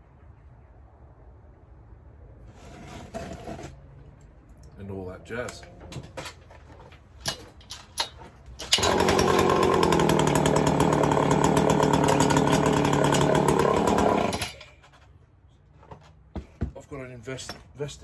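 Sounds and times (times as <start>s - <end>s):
chainsaw engine running: 8.6s - 14.6s.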